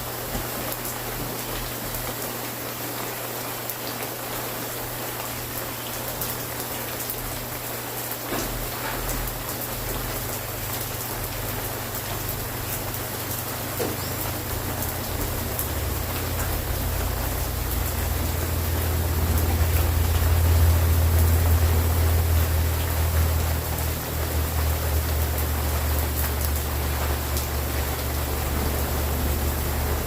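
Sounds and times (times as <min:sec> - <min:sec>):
steady rain falling: 0:00.0 - 0:30.0
low steady hum: 0:13.9 - 0:30.0.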